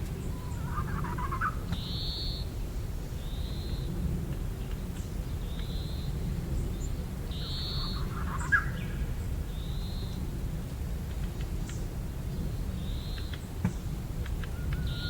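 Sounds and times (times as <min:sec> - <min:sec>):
songbird whistling: 0:14.5 - 0:15.0.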